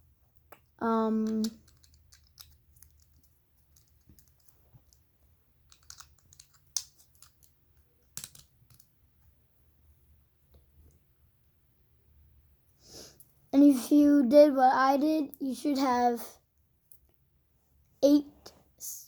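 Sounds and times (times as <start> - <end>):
plastic bricks clicking: 0.5 - 5.0, 5.6 - 8.9.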